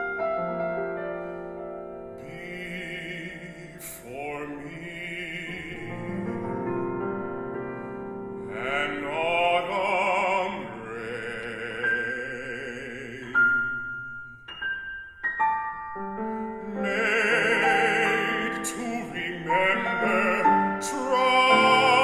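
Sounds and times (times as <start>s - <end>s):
sustained piano chords: 0.0s - 22.0s
baritone singing with vibrato: 2.2s - 7.0s, 8.4s - 14.4s, 16.4s - 22.0s.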